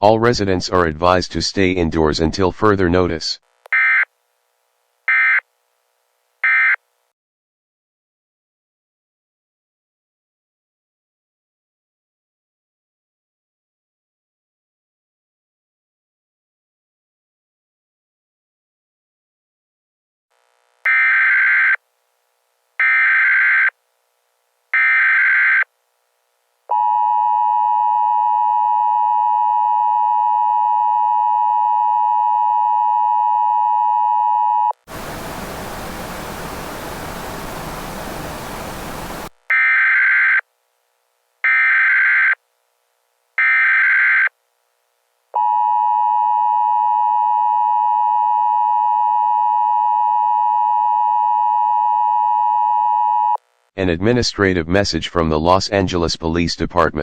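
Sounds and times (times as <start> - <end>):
white-noise static: 34.9 - 39.4.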